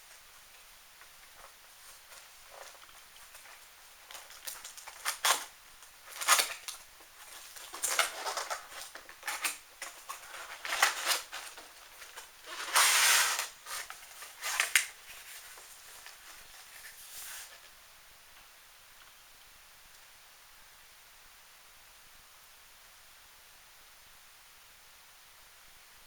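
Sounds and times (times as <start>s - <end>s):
cardboard packaging rustling: 0.0s - 17.7s.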